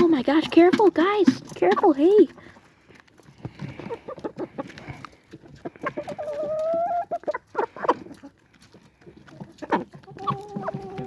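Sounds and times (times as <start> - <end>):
chickens clucking: 0.0 - 11.0.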